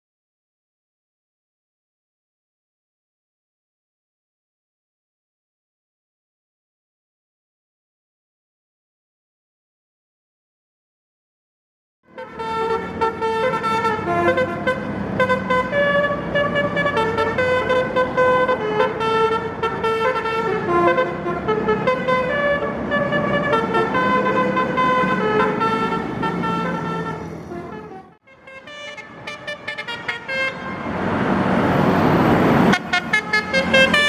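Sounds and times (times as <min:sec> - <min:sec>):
bus musical horn playing tune: 0:12.1 - 0:31.0, 0:32.6 - 0:34.0.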